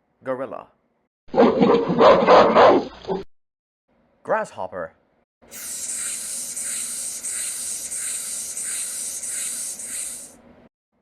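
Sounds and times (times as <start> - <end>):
grasshopper stridulating: 5.5 - 10.4.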